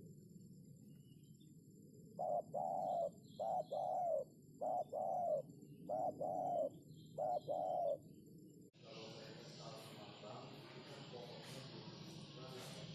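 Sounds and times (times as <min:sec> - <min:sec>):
dove cooing: 0:02.2 - 0:08.0.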